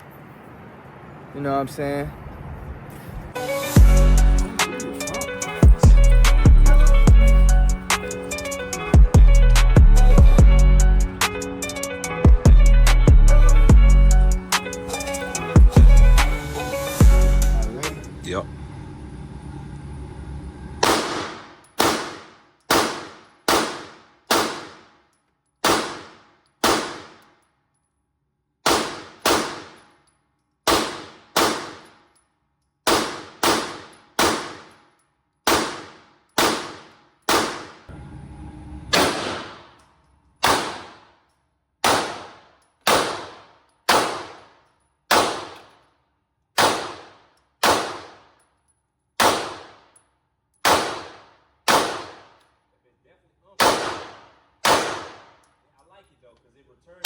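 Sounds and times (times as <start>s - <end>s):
pistol shots with echo: 20.8s - 25.0s, 25.6s - 27.3s, 28.6s - 29.9s, 30.7s - 32.0s, 32.8s - 34.8s, 35.5s - 37.9s, 38.9s - 39.8s, 40.4s - 41.2s, 41.8s - 45.8s, 46.6s - 48.3s, 49.2s - 50.0s, 50.6s - 52.4s, 53.6s - 55.4s.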